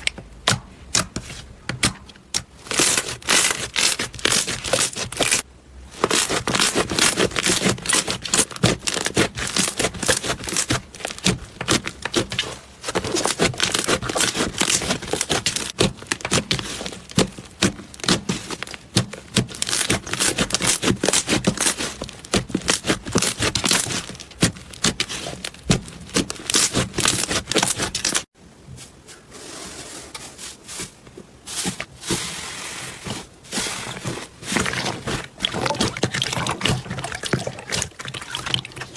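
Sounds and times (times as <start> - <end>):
slime squishing and popping: 34.5 - 38.9.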